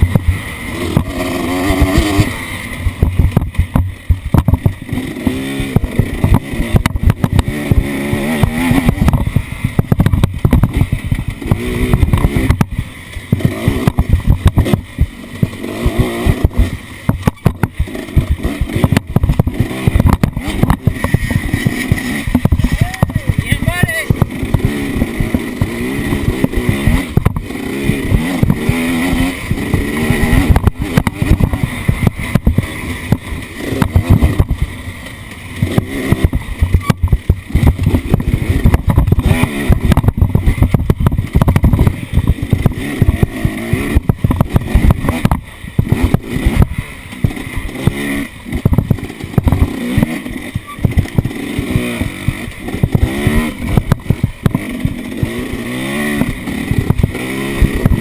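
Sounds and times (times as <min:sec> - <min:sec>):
wind buffeting microphone: 0:00.0 - 0:34.8, 0:35.5 - 0:58.0
off-road vehicle engine revving: 0:00.0 - 0:58.0.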